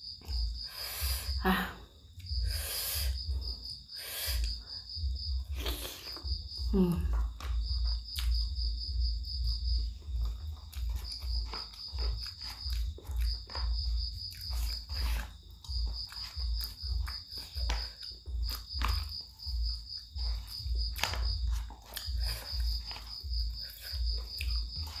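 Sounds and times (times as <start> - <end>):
insect chirping: 0.0 - 25.0
chewing close to microphone: 10.0 - 25.0.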